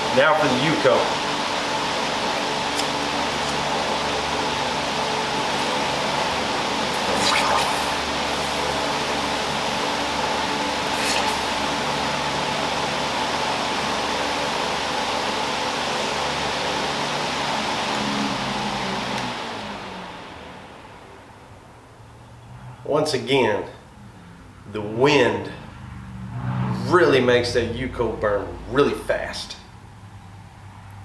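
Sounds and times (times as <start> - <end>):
water spray hissing and splashing: 6.9 - 12.0
artificial wind rushing: 26.1 - 27.8.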